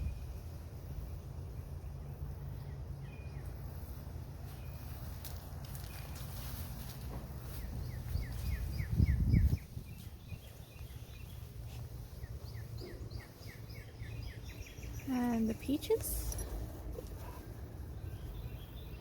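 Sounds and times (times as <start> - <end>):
outdoor background noise: 0.0 - 19.0
bird chirping: 1.5 - 3.9, 7.5 - 19.0.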